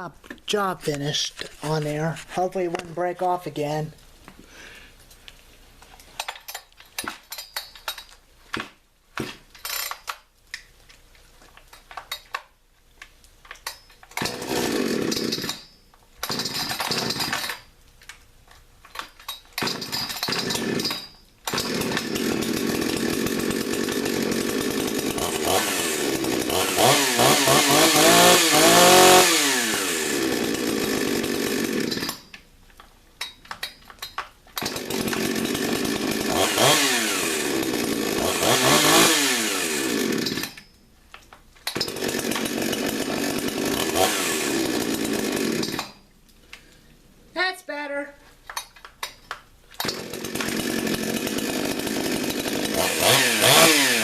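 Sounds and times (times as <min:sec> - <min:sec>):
starter rope pulls: 0:00.0 - 0:03.8, 0:14.1 - 0:17.6, 0:19.0 - 0:32.3, 0:33.6 - 0:40.7, 0:41.6 - 0:46.0, 0:49.8 - 0:54.0
chainsaw engine revving: 0:14.2 - 0:15.6, 0:16.2 - 0:17.6, 0:19.6 - 0:32.3, 0:34.6 - 0:40.7, 0:41.7 - 0:46.0, 0:49.8 - 0:54.0.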